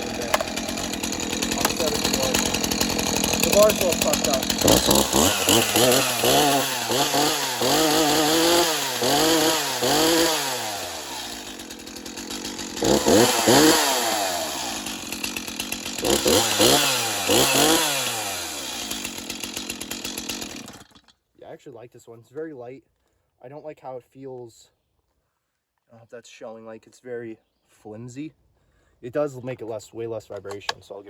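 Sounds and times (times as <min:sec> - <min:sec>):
chainsaw revving: 0:00.0 - 0:21.1.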